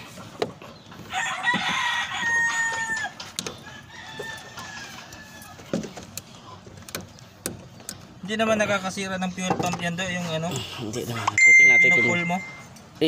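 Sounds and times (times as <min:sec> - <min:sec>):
rooster crowing: 0:01.0 - 0:05.7.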